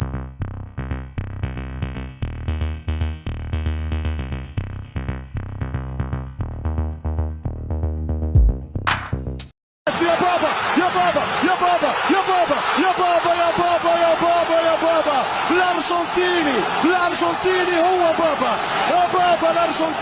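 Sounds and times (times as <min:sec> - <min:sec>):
drum machine beat: 0:08.4 - 0:09.5.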